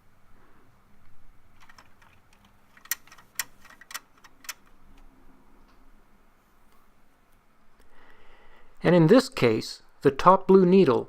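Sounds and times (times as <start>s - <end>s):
toy car clicking against plastic: 1.6s - 4.7s.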